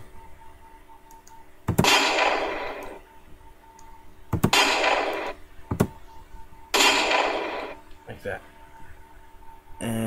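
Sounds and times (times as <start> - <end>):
pistol gunshot with echo: 1.8 - 2.8, 4.4 - 5.4, 6.8 - 7.8.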